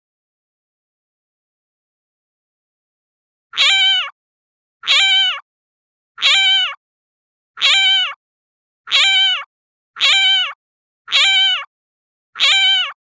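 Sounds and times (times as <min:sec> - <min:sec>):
cat meowing: 0:03.6 - 0:04.2, 0:04.8 - 0:05.4, 0:06.2 - 0:06.8, 0:07.6 - 0:08.2, 0:08.9 - 0:11.7, 0:12.4 - 0:13.0.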